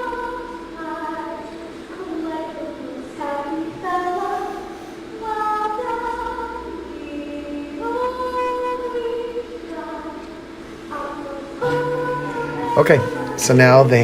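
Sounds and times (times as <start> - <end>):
woman singing slow melody: 0.0 - 13.4
sustained accompaniment note: 11.6 - 14.0.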